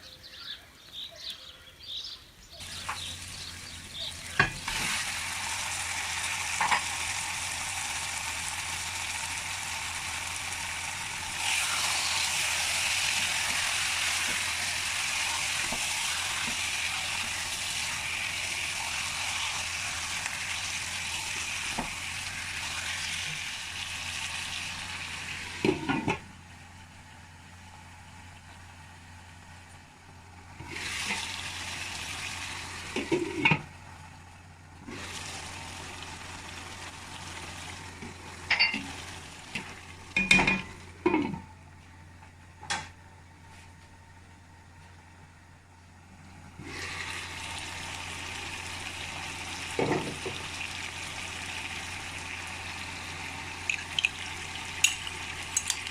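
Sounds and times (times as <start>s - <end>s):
food sizzling in hot oil: 2.6s - 26.2s, 30.6s - 33.6s, 34.8s - 41.2s, 46.6s - 55.9s.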